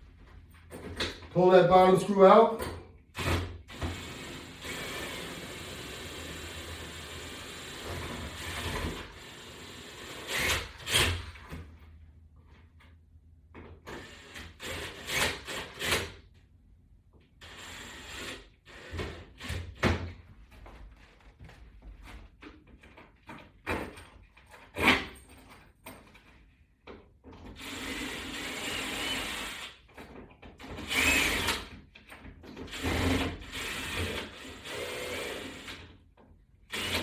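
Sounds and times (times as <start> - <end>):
power drill running: 3.2 - 11.4, 27.6 - 29.8, 30.7 - 31.7, 32.7 - 35.8, 36.7 - 37.0.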